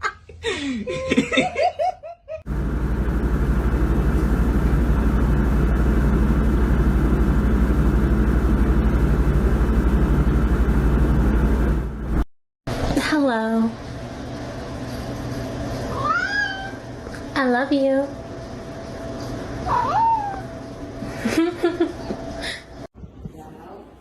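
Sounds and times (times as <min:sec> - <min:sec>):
laughter: 0:00.0 - 0:02.4, 0:21.1 - 0:22.2.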